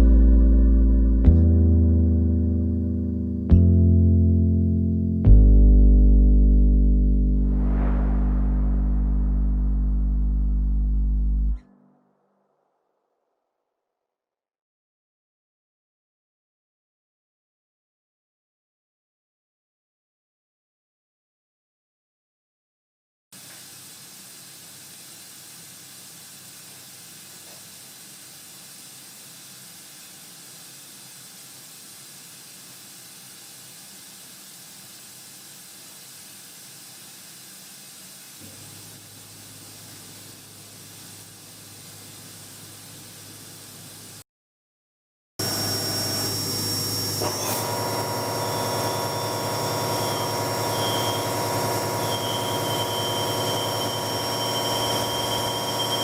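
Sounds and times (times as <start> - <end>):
low hum: 5.3 - 12.3
drilling into metal hiss: 23.4 - 44.2
high-pitched whining tones: 45.4 - 56.0.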